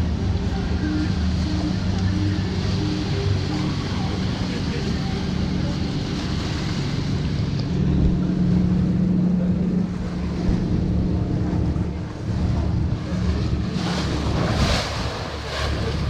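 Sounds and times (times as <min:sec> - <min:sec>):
boat engine droning: 0:00.0 - 0:16.0
water rushing around hull: 0:00.0 - 0:16.0
wind buffeting microphone: 0:05.0 - 0:16.0.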